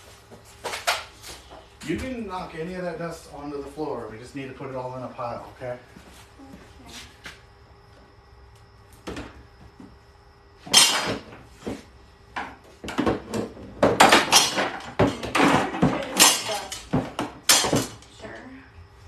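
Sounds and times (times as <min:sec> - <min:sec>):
hard objects clattering and knocking: 0:12.4 - 0:18.1.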